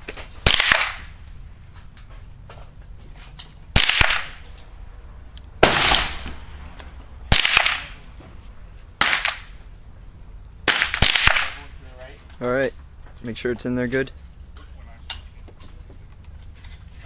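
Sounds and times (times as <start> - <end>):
rifle shots with echo: 0.4 - 1.2, 3.7 - 4.4, 5.6 - 6.6, 7.3 - 8.0, 9.0 - 9.6, 10.6 - 11.7.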